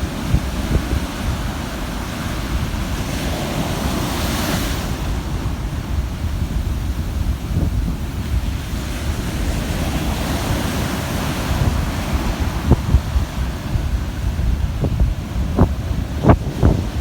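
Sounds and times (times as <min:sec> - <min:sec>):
ocean waves breaking on shore: 0:00.0 - 0:17.0
wind buffeting microphone: 0:00.0 - 0:17.0.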